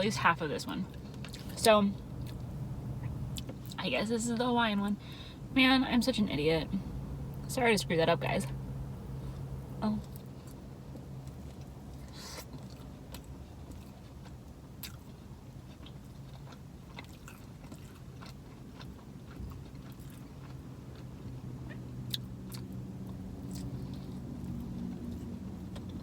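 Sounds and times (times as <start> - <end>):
steady low hum: 0.0 - 12.1
person chewing: 1.2 - 3.8, 14.8 - 26.0.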